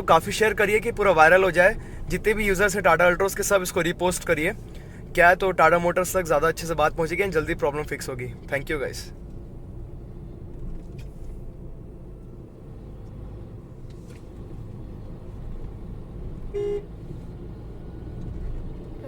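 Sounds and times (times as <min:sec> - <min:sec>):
car engine droning in cabin: 0:00.0 - 0:19.0
faint engine bay noise: 0:00.0 - 0:19.0
car horn toot: 0:16.5 - 0:17.0.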